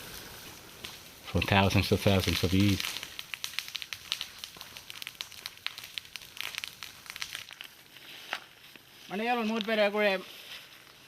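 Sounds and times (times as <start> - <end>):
sharp snap of fire: 0.0 - 8.6
fire crackling: 0.0 - 11.0.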